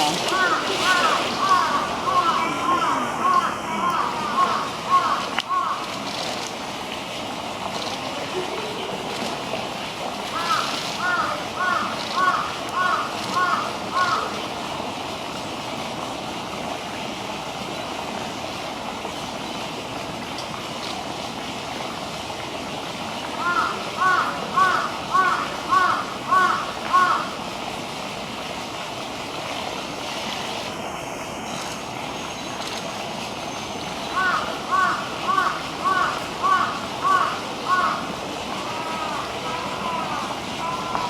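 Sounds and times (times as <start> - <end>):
flowing water: 0.0 - 41.0
crow cawing: 0.3 - 5.9, 10.3 - 14.3, 23.4 - 27.3, 34.1 - 38.0, 38.6 - 41.0.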